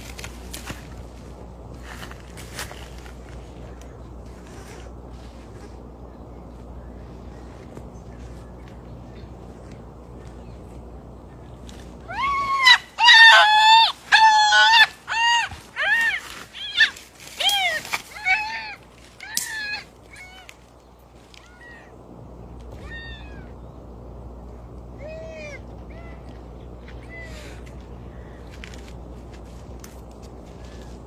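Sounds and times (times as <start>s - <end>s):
animal high-pitched calls: 12.1s - 20.5s.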